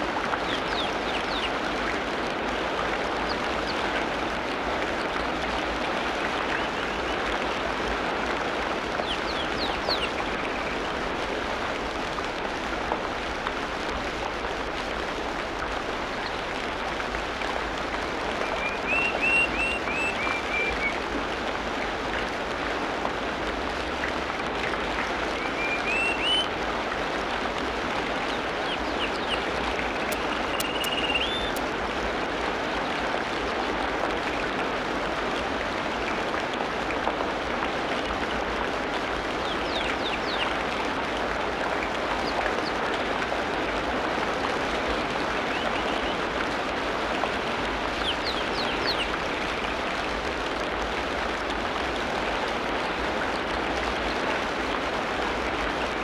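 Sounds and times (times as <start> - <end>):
water noise: 0.0 - 56.0
rising whistled bird notes: 25.4 - 26.4, 30.1 - 31.6
quick high bird chirps: 30.1 - 31.6.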